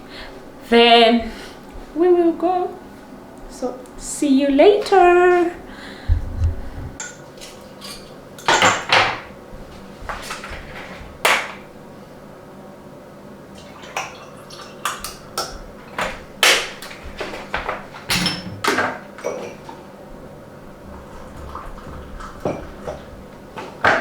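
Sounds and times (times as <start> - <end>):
dishes and utensils clinking: 18.0 - 19.7.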